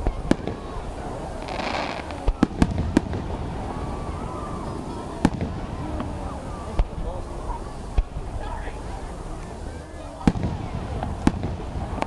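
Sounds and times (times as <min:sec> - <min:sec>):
fireworks bangs: 0:00.0 - 0:12.0
fireworks crackling: 0:00.0 - 0:12.0.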